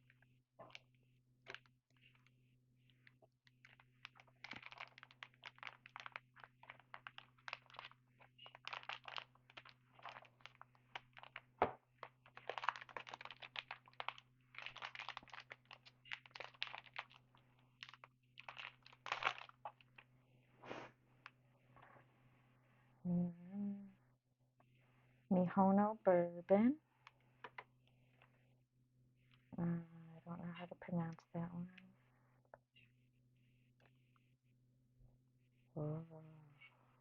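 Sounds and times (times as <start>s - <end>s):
wrapper crinkling: 3.5s - 20.1s.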